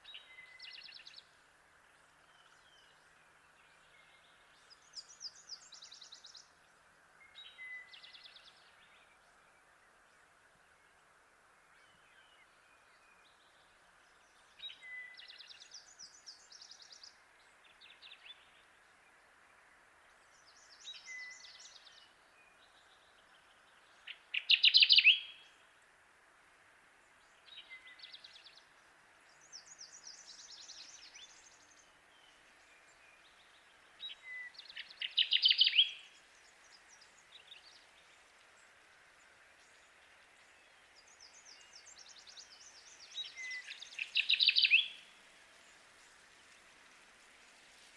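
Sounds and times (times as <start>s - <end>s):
faint steady hiss: 0.0s - 47.9s
higher faint bird songs: 0.0s - 47.9s
warbler singing: 20.2s - 25.6s, 27.2s - 46.8s.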